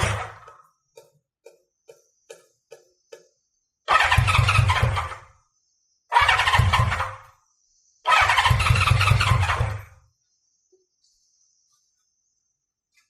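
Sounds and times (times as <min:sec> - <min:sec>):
motorcycle engine cranking: 0:03.9 - 0:05.3, 0:06.2 - 0:07.2, 0:08.1 - 0:10.0.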